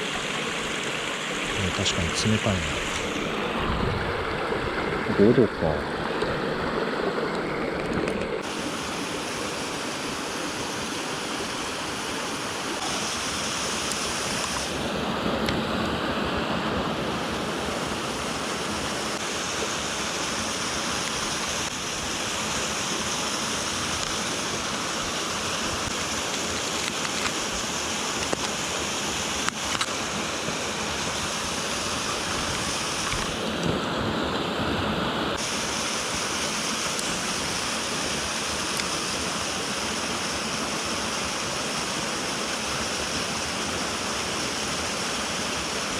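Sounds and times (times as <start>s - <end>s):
stream rushing over rocks: 0.0s - 45.9s.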